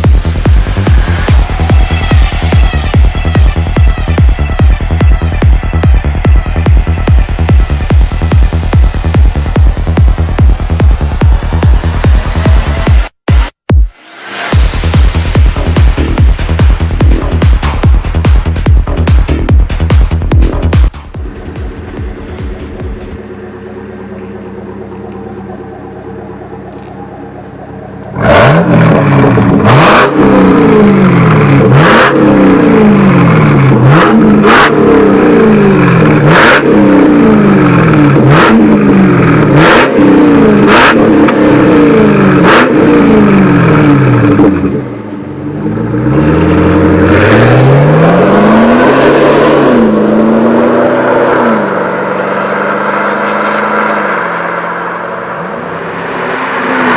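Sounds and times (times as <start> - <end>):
exhaust cracks: 0.0 - 45.1
car engine revving: 0.0 - 56.9.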